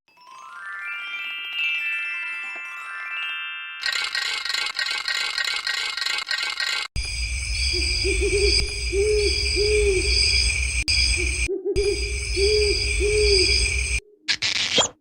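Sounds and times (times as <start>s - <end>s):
owl hooting: 7.7s - 14.9s.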